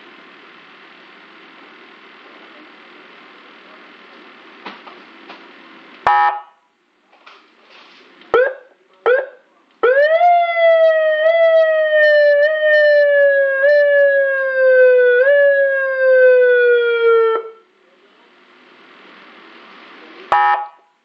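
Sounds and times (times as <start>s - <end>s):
electronic siren tone: 6.1s - 6.6s, 8.4s - 17.6s, 20.3s - 20.9s
siren chirp: 6.1s - 6.6s, 8.4s - 17.6s, 20.3s - 20.9s.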